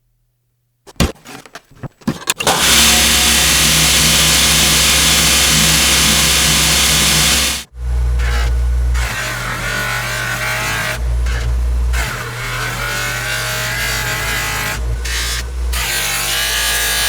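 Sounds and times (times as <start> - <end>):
electric machine hissing and humming: 2.5 - 8.1.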